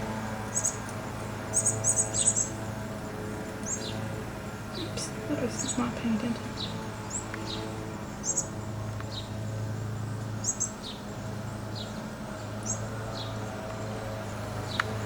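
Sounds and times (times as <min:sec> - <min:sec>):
steady low hum: 0:00.0 - 0:15.0
bird chirping: 0:00.5 - 0:00.8, 0:01.5 - 0:02.6, 0:04.7 - 0:09.4, 0:10.4 - 0:11.1.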